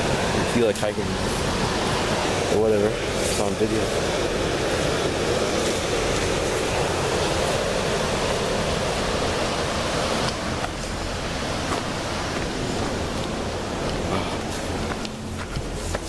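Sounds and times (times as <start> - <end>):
steady rushing noise: 0.0 - 16.0.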